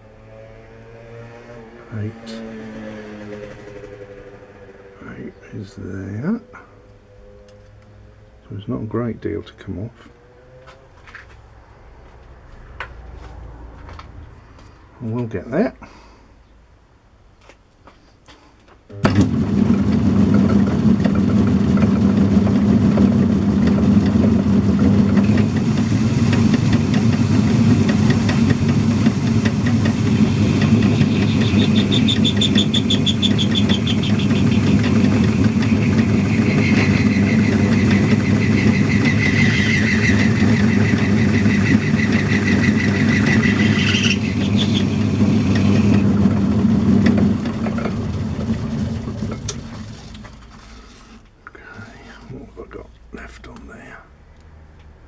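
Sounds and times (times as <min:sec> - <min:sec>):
metal lathe humming: 0:18.9 - 0:51.2
lathe tool cutting steel: 0:19.0 - 0:51.2.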